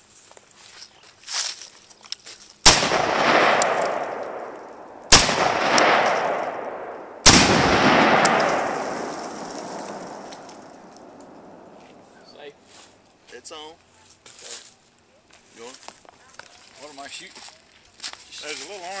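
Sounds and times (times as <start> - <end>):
rifle shots: 2.6 - 11.8
rolling echo of gunshots: 2.6 - 11.8.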